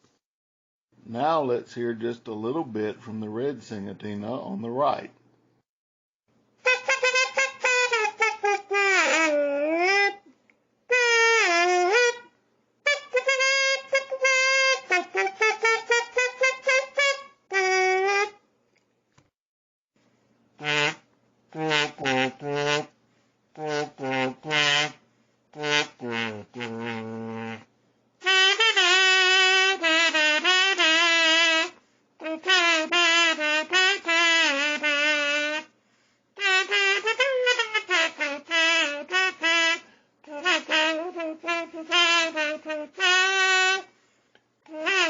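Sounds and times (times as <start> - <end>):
kazoo playing buzzy tune: 6.6 - 10.3, 10.9 - 18.4, 20.6 - 45.0.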